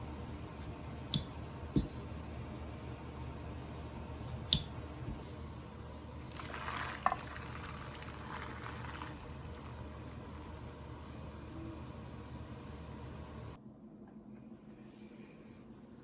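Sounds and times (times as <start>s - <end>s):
liquid running: 6.2s - 11.5s.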